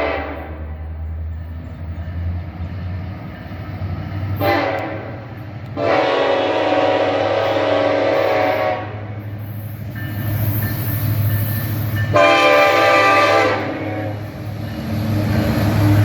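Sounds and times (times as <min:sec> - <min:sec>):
locomotive air horn blasts: 0:00.0 - 0:00.9, 0:04.4 - 0:05.2, 0:05.8 - 0:09.1, 0:12.1 - 0:14.2
locomotive engine rumbling: 0:00.0 - 0:16.0.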